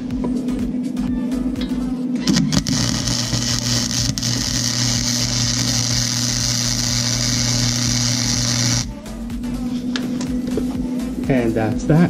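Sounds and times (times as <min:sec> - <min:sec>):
welder transformer humming: 0:01.5 - 0:11.2
welding arc sizzling and crackling: 0:02.2 - 0:08.9.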